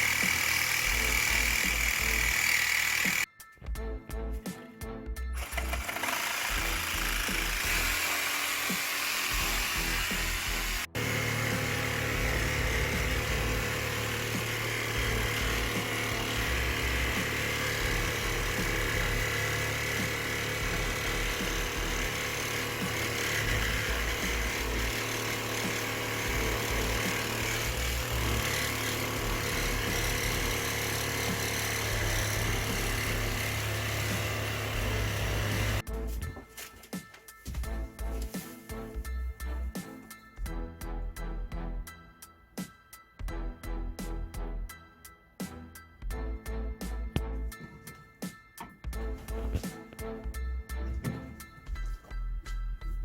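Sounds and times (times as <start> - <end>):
power saw cutting: 0.0 - 3.3, 5.4 - 35.8
background music: 0.0 - 53.0.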